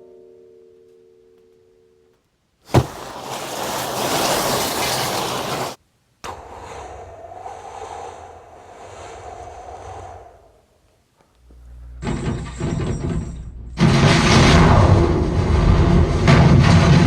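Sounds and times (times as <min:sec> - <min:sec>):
soft rushing noise: 0:02.7 - 0:10.9.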